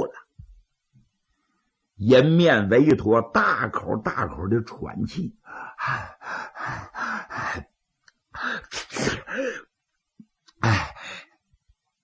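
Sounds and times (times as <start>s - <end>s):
man panting and gasping: 5.4s - 7.7s, 8.3s - 9.7s, 10.6s - 11.4s.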